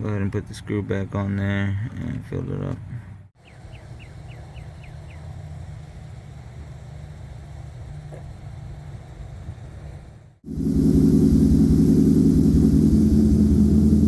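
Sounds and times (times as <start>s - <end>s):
low outdoor rumble: 1.2s - 14.0s
high falling chirps: 10.5s - 14.0s.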